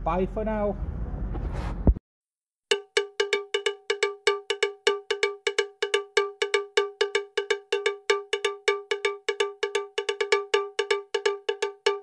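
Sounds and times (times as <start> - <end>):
metallic bell-like percussion strikes: 2.7 - 12.0.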